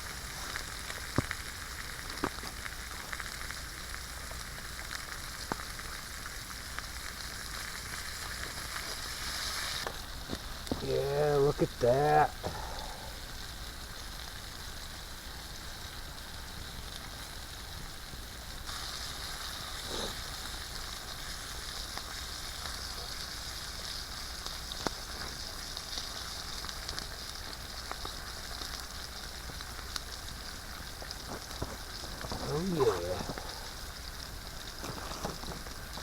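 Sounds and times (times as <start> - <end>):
steak sizzling in hot oil: 0.0 - 36.0.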